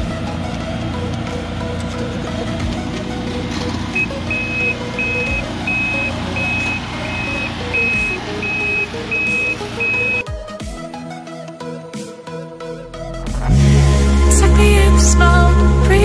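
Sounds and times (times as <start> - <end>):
engine running: 0.0 - 10.2, 13.0 - 16.0
vehicle warning beeper: 3.4 - 10.2.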